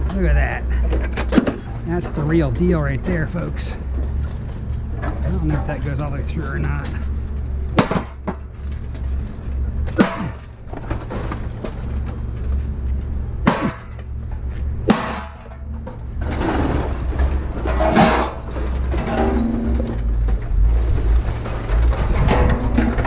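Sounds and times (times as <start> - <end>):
rustling and shuffling: 0.0 - 13.4, 14.0 - 14.8, 15.4 - 23.0
steady low rumble: 0.0 - 23.0
sharp knocks of scrap items: 7.8 - 8.5, 9.9 - 10.5, 13.4 - 14.0, 14.8 - 15.6.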